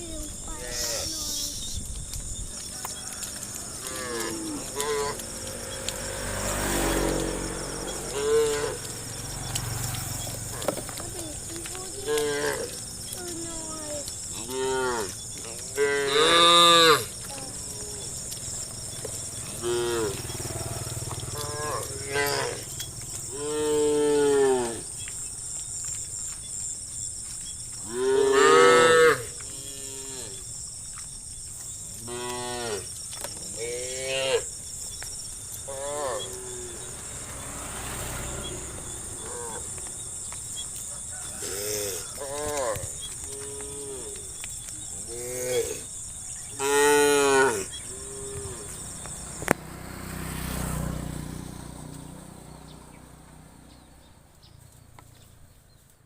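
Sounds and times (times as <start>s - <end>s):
high insect buzz: 0.0s - 54.1s
cattle mooing: 3.0s - 9.1s, 14.4s - 17.1s, 19.5s - 22.7s, 23.3s - 24.8s, 27.9s - 30.4s, 35.7s - 37.4s, 38.4s - 39.8s, 46.6s - 48.7s.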